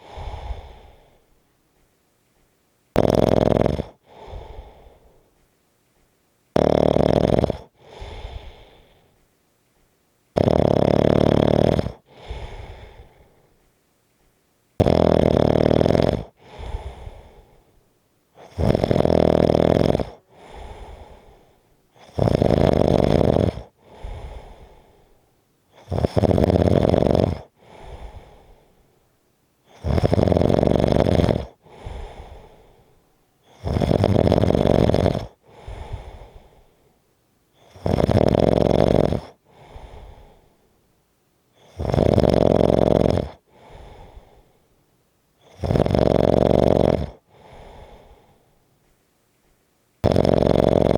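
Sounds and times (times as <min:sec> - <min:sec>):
person snoring: 0:03.0 - 0:05.0, 0:06.6 - 0:09.0, 0:10.4 - 0:13.3, 0:14.8 - 0:17.5, 0:18.4 - 0:25.0, 0:25.7 - 0:28.6, 0:29.7 - 0:36.6, 0:37.6 - 0:40.5, 0:41.6 - 0:44.4, 0:45.5 - 0:48.3, 0:50.0 - 0:50.9.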